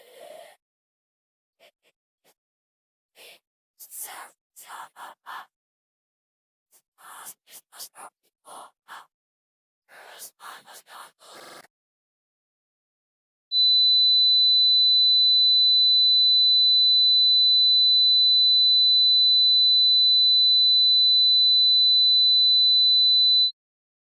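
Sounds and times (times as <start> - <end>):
high-pitched electronic sine tone: 13.6 - 23.6.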